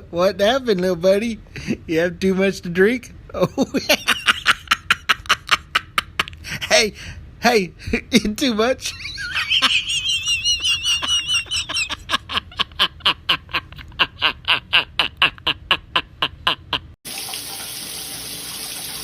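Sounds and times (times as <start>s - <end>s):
tap running water: 17.1s - 19.0s.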